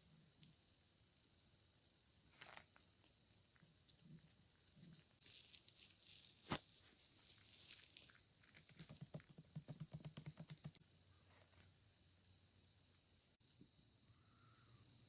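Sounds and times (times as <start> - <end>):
lizard chewing greens: 2.3 - 6.5, 7.1 - 9.7.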